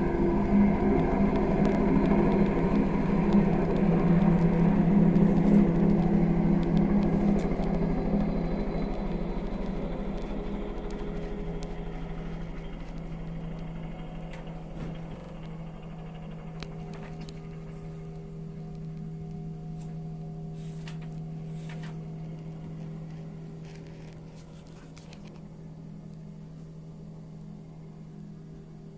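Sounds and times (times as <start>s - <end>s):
helicopter engine and rotor hum: 0.0s - 28.9s
faint clicks: 0.9s - 20.0s.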